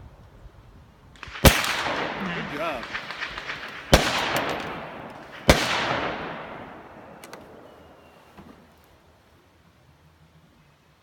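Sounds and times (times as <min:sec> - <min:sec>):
rifle shots with echo: 0:01.2 - 0:08.2
faint clicks: 0:07.2 - 0:07.6.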